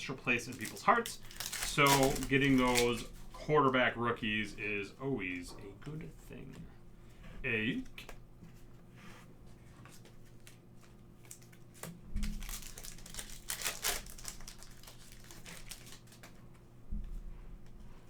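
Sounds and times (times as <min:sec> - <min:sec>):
wrapper crinkling and tearing: 0:00.2 - 0:03.2, 0:10.4 - 0:16.4.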